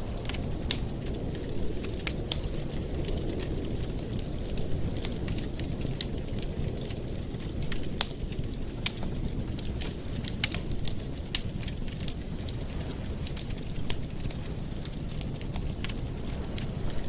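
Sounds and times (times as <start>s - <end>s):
burning wood crackling and popping: 0.0s - 17.0s
campfire flames rumbling: 0.0s - 17.0s.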